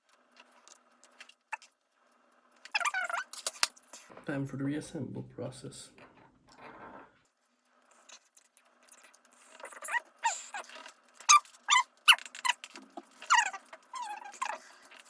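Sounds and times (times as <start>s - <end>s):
high-pitched squeaks and whines: 2.7s - 3.4s, 9.4s - 15.0s.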